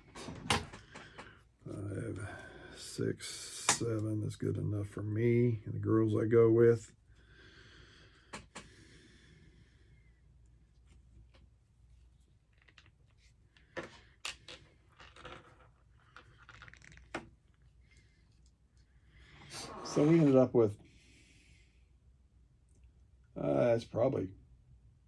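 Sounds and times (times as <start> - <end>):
fishing line being handled: 10.7 - 18.9.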